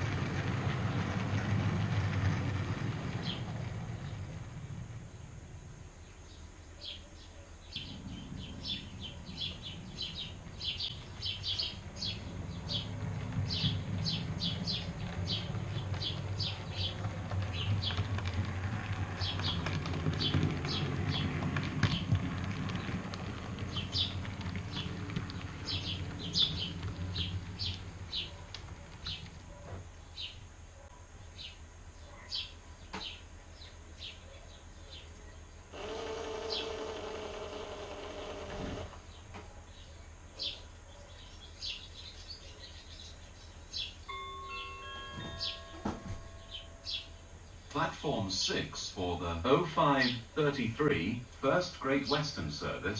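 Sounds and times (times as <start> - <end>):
train rumbling past: 0.0 - 7.0, 7.7 - 30.7, 41.3 - 52.9
birds chirping: 0.2 - 52.9.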